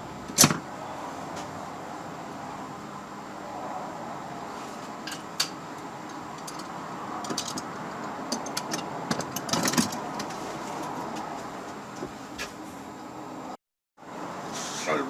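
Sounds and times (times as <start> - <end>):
steady background hum: 0.0 - 15.0
hand tools clicking and clinking: 5.0 - 10.3.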